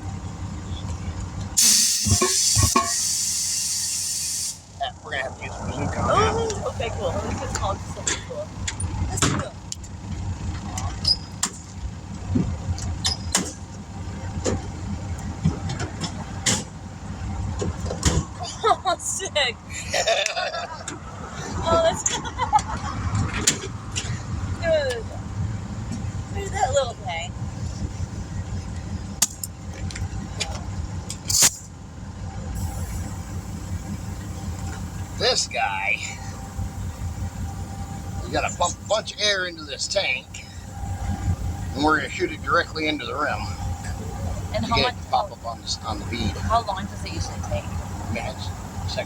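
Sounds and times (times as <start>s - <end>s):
vehicle engine running: 0.0s - 49.0s
short sharp hiss: 1.6s - 4.7s, 31.3s - 31.7s.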